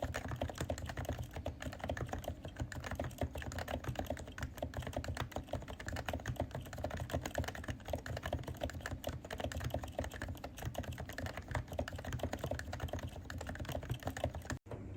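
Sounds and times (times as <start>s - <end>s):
keyboard typing: 0.0s - 14.6s.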